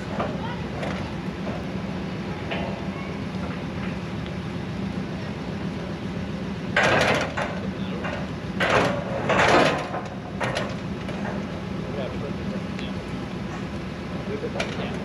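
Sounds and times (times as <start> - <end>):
engine hum: 0.0 - 15.0.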